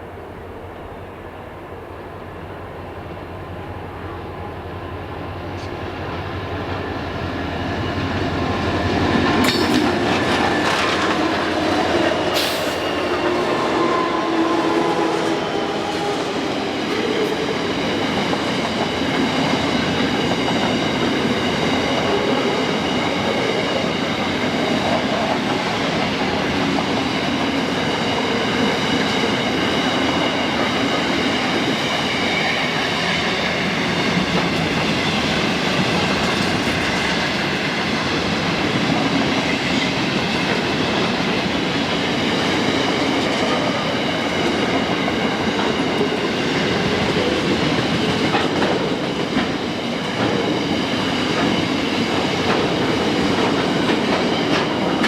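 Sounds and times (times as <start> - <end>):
train wheels on rails: 0.0 - 55.0
sharp metal clanks: 9.4 - 10.0.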